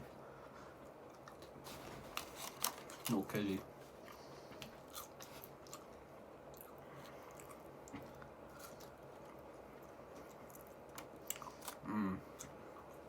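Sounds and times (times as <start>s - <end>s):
faint low hum: 0.0s - 13.0s
person chewing food: 4.0s - 13.0s.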